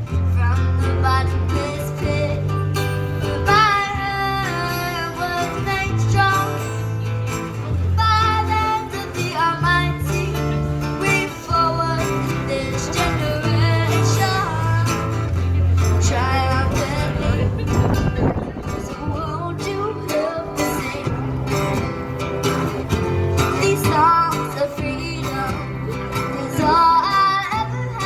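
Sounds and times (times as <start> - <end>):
strummed guitar chords: 0.0 - 28.0
person singing with vibrato: 0.3 - 7.1, 7.8 - 15.3, 23.4 - 28.0.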